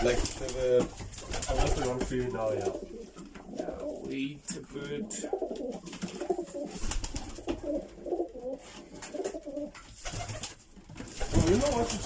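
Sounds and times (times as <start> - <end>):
pigeons cooing: 2.4 - 4.1, 5.0 - 10.4.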